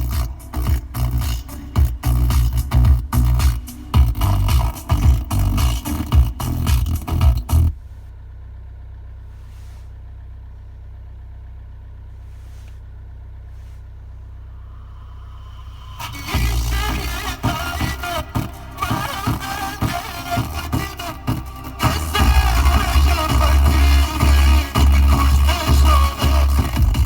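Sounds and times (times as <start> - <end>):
loud car audio: 0.0 - 8.1, 14.3 - 27.0
steady low hum: 0.0 - 27.0.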